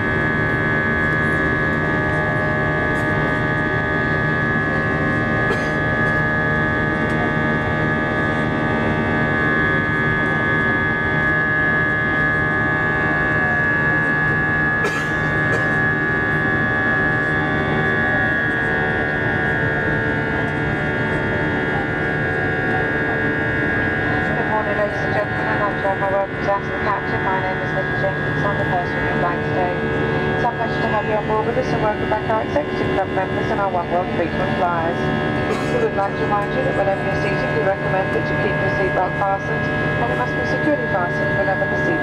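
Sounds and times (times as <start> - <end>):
jet engine hum with whine: 0.0 - 42.0.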